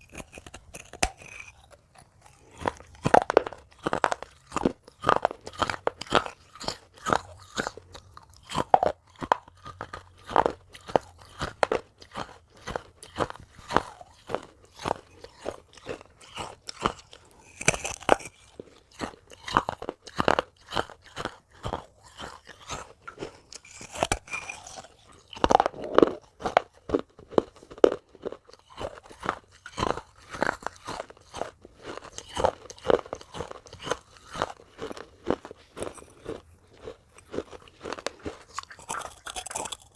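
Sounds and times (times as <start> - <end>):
teeth crunching clay pot: 0.0 - 39.9.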